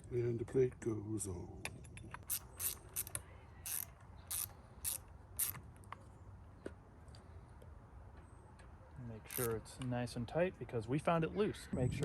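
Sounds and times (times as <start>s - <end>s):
ratchet wrench clicking: 2.2s - 5.6s, 9.3s - 9.6s.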